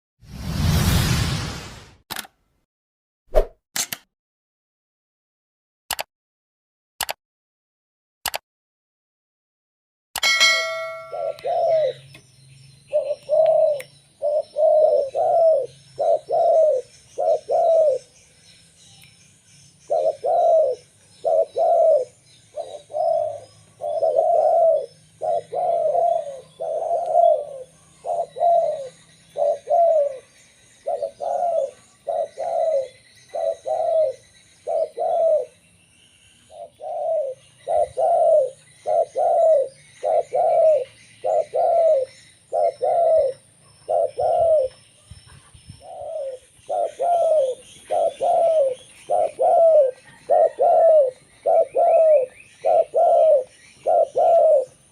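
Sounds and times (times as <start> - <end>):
dove cooing: 10.6 - 12.1, 12.9 - 18.1, 19.9 - 35.5, 36.5 - 54.8
faint small bird chirps: 25.6 - 54.8.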